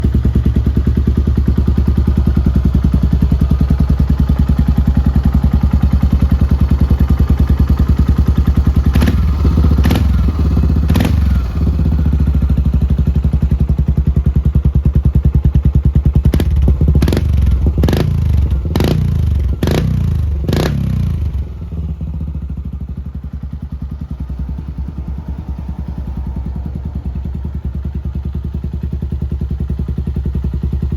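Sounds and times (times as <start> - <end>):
motorcycle engine idling: 0.0 - 30.9
motorcycle engine revving blips: 8.9 - 11.9, 16.3 - 21.4.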